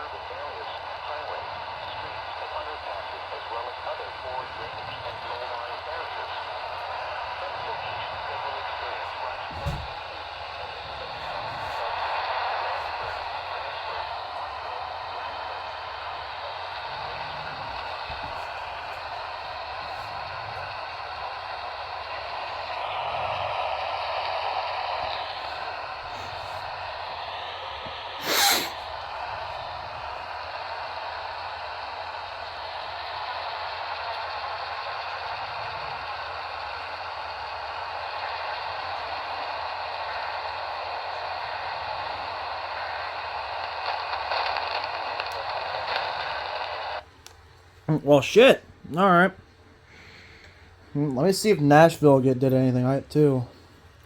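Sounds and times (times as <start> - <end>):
radio static hiss: 0.0 - 47.2, 47.8 - 53.7
faint crackles: 27.8 - 47.4.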